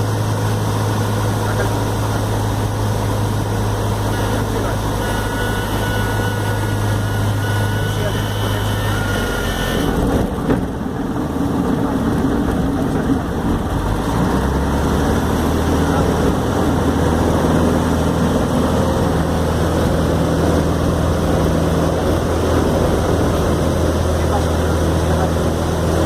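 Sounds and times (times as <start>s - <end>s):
airplane engine and propeller: 0.0s - 26.0s.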